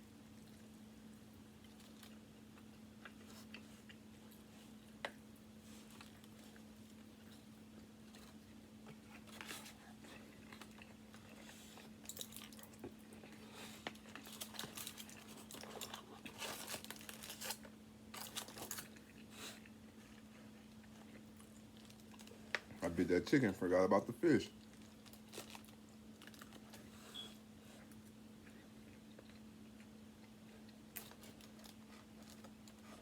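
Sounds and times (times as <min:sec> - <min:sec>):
person chewing chicken: 0:00.2 - 0:22.8, 0:24.6 - 0:33.0.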